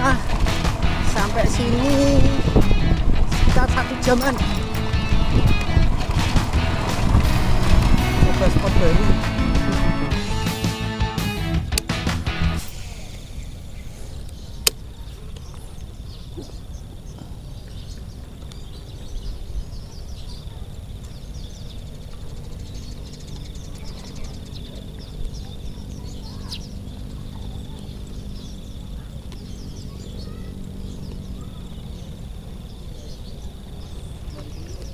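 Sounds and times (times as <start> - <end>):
low rumble: 0.0 - 14.6
sharp click: 11.7 - 12.8
bird chirps: 12.6 - 34.9.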